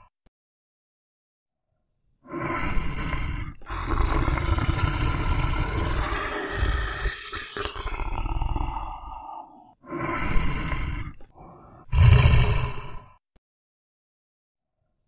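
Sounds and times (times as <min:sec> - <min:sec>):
animal roaring: 0:02.3 - 0:13.2.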